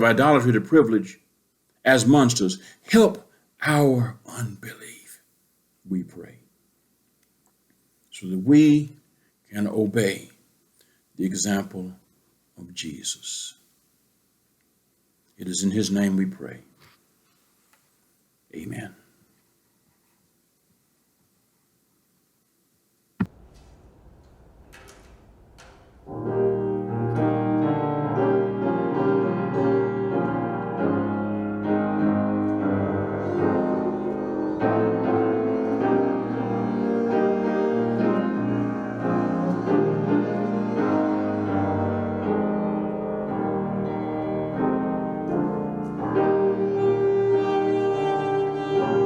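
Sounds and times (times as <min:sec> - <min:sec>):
piano and bowed strings music: 0:26.0 - 0:49.0.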